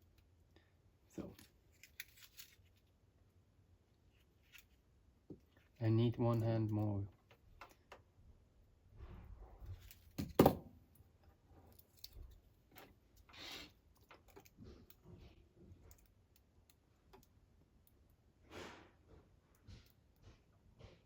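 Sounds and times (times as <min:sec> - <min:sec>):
short hisses: 0:18.5 - 0:19.0.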